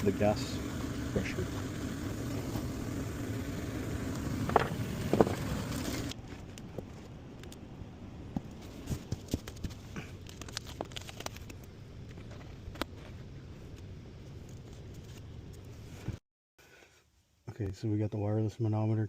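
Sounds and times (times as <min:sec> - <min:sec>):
machine hum: 0:00.0 - 0:06.2.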